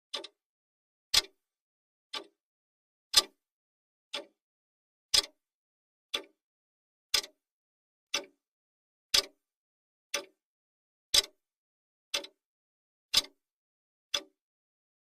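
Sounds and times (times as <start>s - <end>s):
timer ticking: 0.1s - 0.4s, 1.1s - 1.4s, 2.1s - 2.4s, 3.1s - 3.4s, 5.1s - 5.4s, 6.1s - 6.4s, 7.1s - 7.4s, 9.2s - 9.4s, 11.1s - 11.4s, 12.1s - 12.4s, 13.1s - 13.4s, 14.1s - 14.4s.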